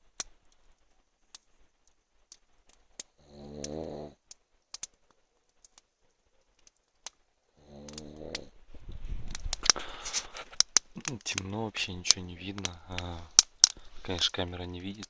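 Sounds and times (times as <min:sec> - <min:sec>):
man snoring heavily: 0:03.2 - 0:04.2, 0:07.6 - 0:08.5
sharp little clicks: 0:07.8 - 0:08.5, 0:09.3 - 0:15.0.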